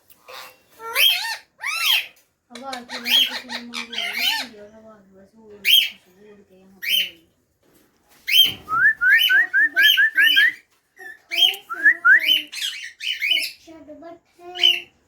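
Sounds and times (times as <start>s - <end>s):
parrot screeching: 0.3s - 2.2s, 2.9s - 4.5s.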